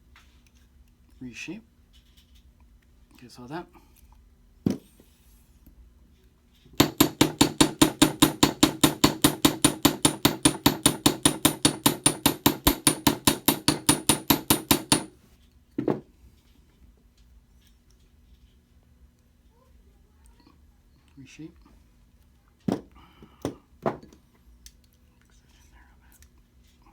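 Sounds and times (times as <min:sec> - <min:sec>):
hammer striking wire on metal block: 0:06.8 - 0:15.2.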